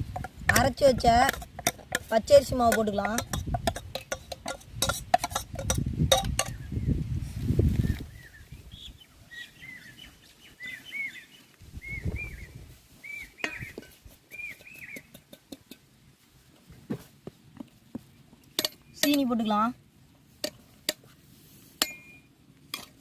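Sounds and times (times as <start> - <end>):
bird whistled chirps: 7.9 - 15.1.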